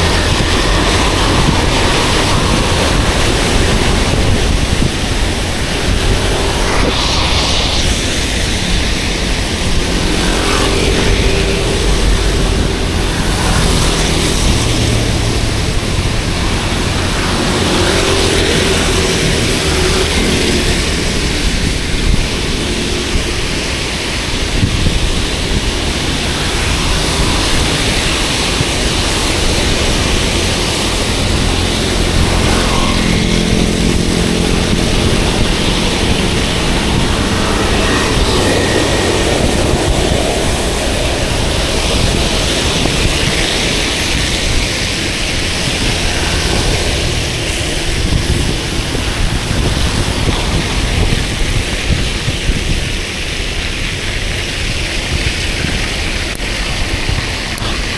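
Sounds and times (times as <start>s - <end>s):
low hum: 0.0s - 22.4s
wet road noise: 0.0s - 57.9s
wind rushing: 0.0s - 57.9s.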